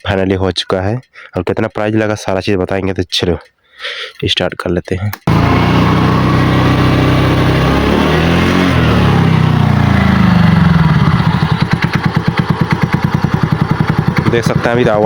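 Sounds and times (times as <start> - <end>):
scooter engine running: 5.3 - 15.0.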